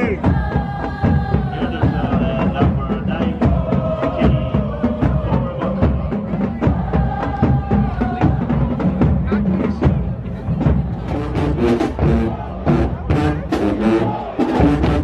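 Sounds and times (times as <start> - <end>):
marching band playing: 0.0 - 15.0
horns holding notes: 11.0 - 15.0.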